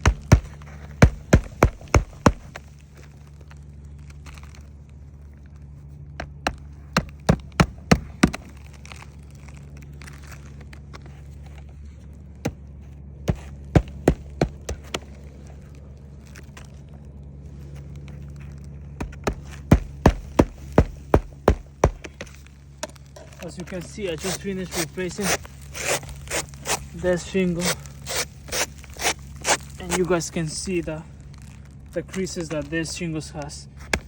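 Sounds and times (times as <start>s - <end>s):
hammer driving nails: 0.0s - 2.6s, 19.1s - 22.3s
steady low hum: 0.0s - 34.0s.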